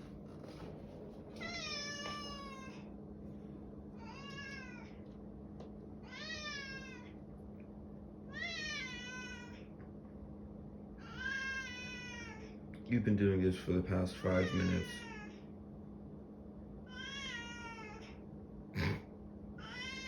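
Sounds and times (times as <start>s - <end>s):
cat meowing: 1.4s - 2.9s, 4.0s - 5.0s, 6.0s - 7.2s, 8.3s - 9.7s, 11.0s - 12.6s, 14.2s - 15.4s, 16.9s - 18.2s, 19.6s - 20.0s.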